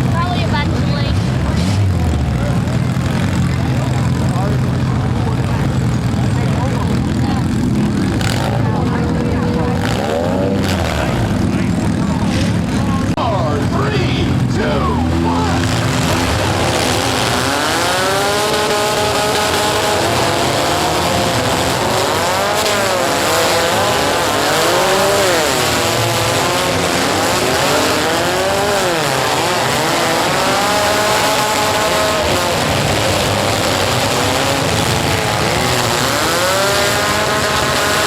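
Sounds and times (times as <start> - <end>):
car engines revving: 0.0 - 38.0
tires squealing: 0.0 - 38.0.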